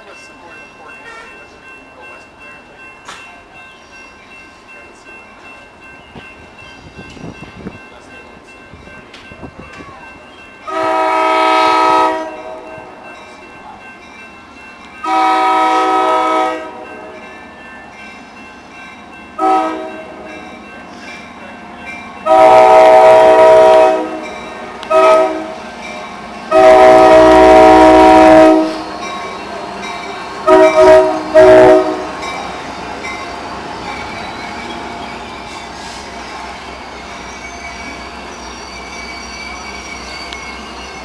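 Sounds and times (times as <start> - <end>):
locomotive air horn: 10.7 - 12.7, 15.0 - 16.8, 19.4 - 20.0, 22.3 - 24.2, 24.9 - 25.6, 26.5 - 28.9, 30.4 - 32.1
faint high squeal: 33.4 - 41.0.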